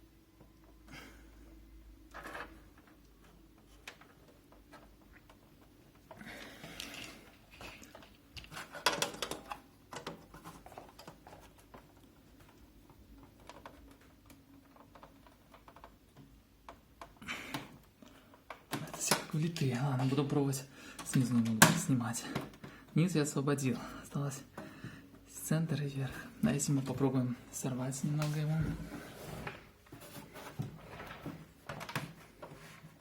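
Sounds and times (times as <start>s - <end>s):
plastic clicks and knocks: 7.9s - 12.6s.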